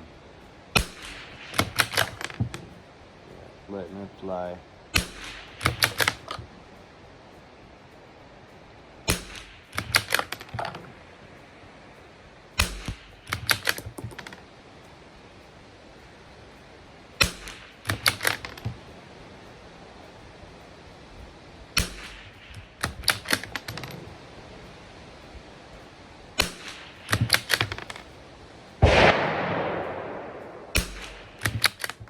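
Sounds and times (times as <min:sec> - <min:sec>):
quiet rifle shots: 0:00.0 - 0:32.0
rifle bolt metallic clicks: 0:00.8 - 0:02.8, 0:05.0 - 0:06.6, 0:09.1 - 0:12.0, 0:12.6 - 0:14.6, 0:17.2 - 0:18.9, 0:21.8 - 0:24.2, 0:25.9 - 0:28.2, 0:28.8 - 0:32.0.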